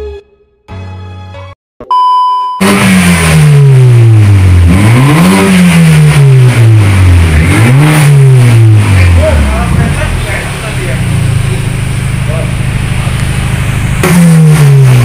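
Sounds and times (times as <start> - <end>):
high beep: 1.8 - 2.8
car engine revving: 2.6 - 15.0.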